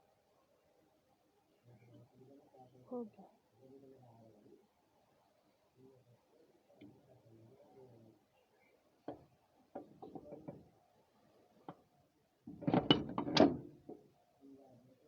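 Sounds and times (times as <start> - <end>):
metal clicks and knocks: 12.5 - 14.0.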